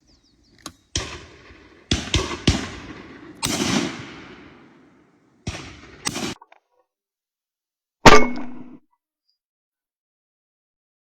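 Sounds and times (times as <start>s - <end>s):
airsoft gun shots: 0.9s - 6.4s, 8.1s - 8.8s.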